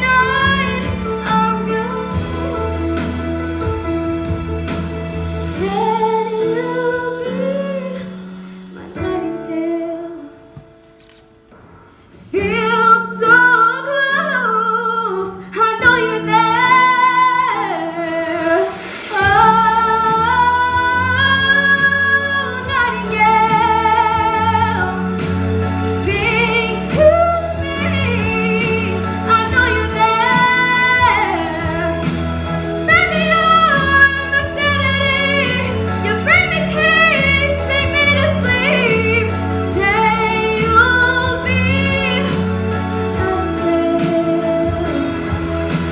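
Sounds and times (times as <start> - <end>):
low bass part: 0.0 - 5.1
woman singing pop ballad: 0.0 - 10.5, 12.3 - 45.9
instrumental accompaniment: 0.0 - 45.9.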